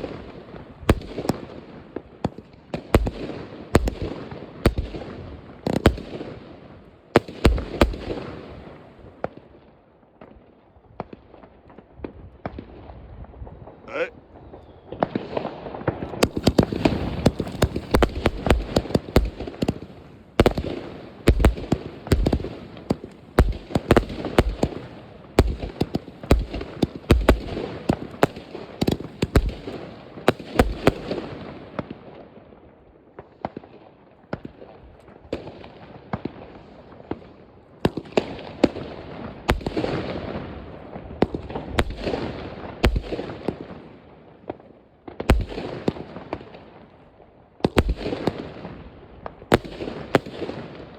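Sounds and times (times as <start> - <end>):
fireworks crackling: 0.0 - 9.4, 13.9 - 32.0, 34.4 - 50.9
firecracker bangs: 15.0 - 31.2.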